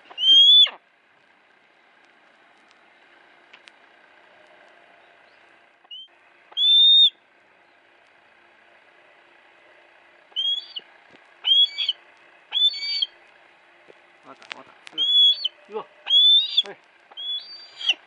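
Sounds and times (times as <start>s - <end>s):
hawk crying: 0.0s - 0.8s, 5.9s - 7.2s, 10.3s - 13.2s, 15.0s - 18.0s.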